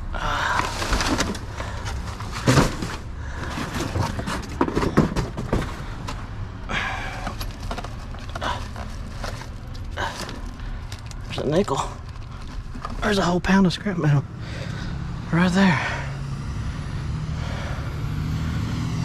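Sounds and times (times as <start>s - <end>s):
junk being knocked and clattering: 0.4s - 13.3s.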